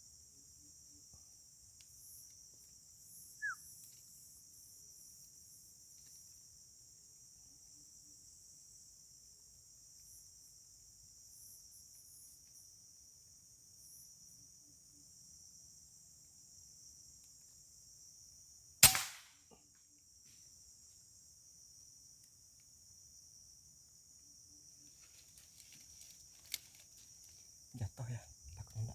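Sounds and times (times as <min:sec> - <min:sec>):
insect drone: 0:00.0 - 0:28.9
air rifle shot: 0:18.8 - 0:19.4.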